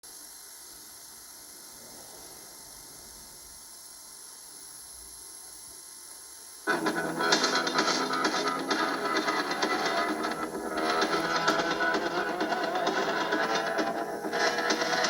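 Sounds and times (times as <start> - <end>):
high constant whine: 0.0 - 15.0
recording hiss: 0.0 - 15.0
loud guitar music: 6.7 - 15.0.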